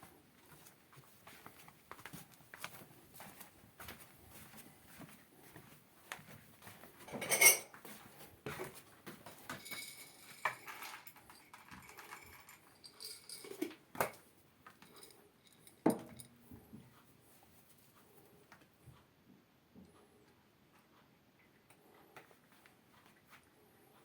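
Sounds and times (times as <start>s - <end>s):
clinks and knocks: 7.0s - 7.7s, 9.4s - 16.4s
faint ringing: 7.1s - 7.7s.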